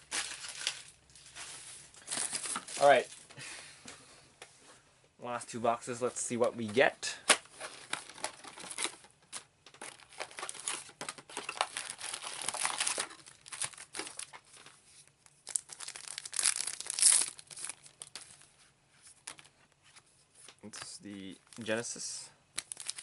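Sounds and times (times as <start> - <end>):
packaging tearing and crinkling: 0.1 - 1.0, 2.0 - 3.2, 7.6 - 14.7, 15.3 - 18.4, 22.6 - 23.0.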